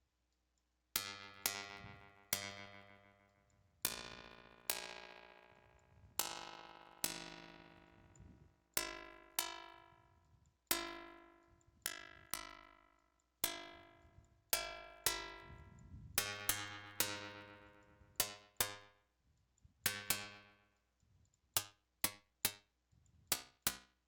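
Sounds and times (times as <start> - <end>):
synthesized plucked string notes: 1.0 - 8.2.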